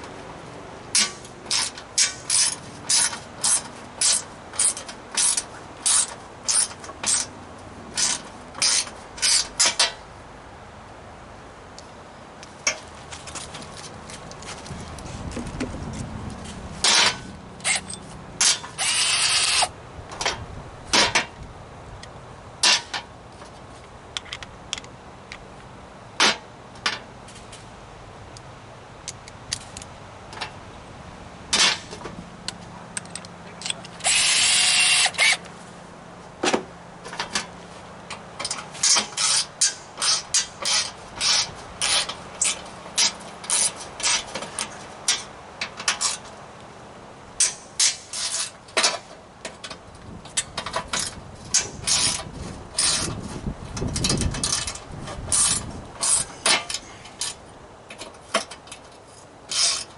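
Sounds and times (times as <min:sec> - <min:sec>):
metal parts clicking and knocking: 0:00.9 - 0:07.3, 0:33.0 - 0:35.4, 0:47.4 - 0:59.9
power drill running: 0:34.0 - 0:35.4.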